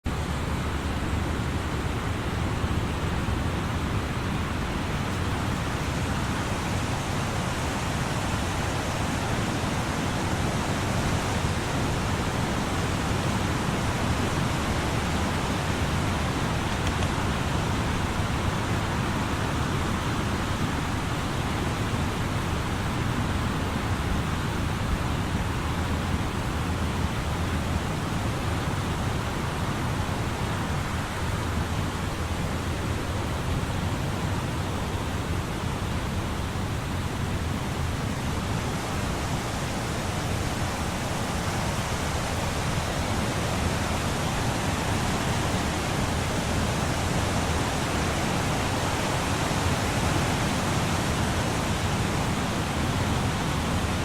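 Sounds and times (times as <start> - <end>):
deep rumble of wind: 0.0 - 54.0
leaves rustling in wind: 0.0 - 54.0.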